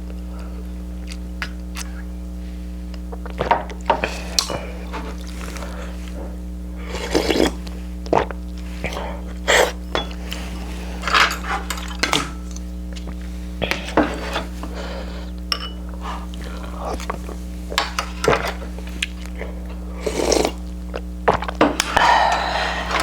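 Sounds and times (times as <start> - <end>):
steady low hum: 0.0 - 23.0
utensils clinking against dishes: 9.8 - 12.7, 15.5 - 16.0.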